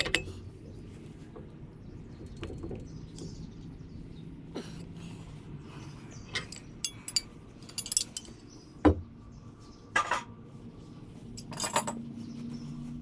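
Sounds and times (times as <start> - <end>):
metal tools clinking on fittings: 0.0 - 0.4, 6.3 - 8.5, 11.4 - 12.1.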